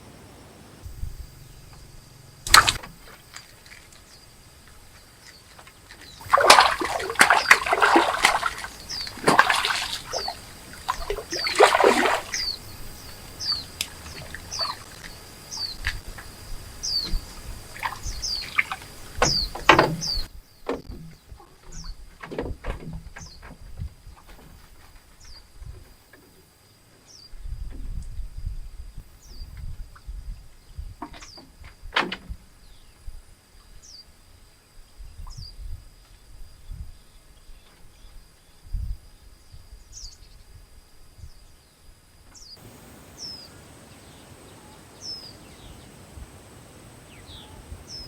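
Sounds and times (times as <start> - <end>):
water splashing and sloshing: 2.4 - 25.0.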